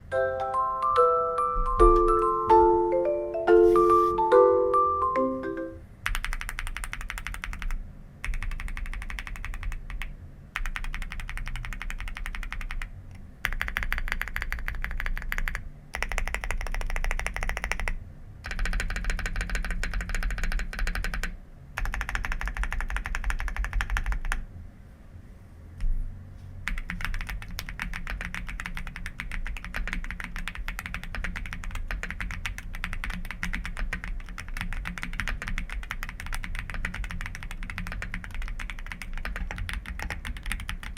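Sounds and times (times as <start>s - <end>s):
fast typing on mechanical keyboard: 6.0s - 24.4s, 26.6s - 40.9s.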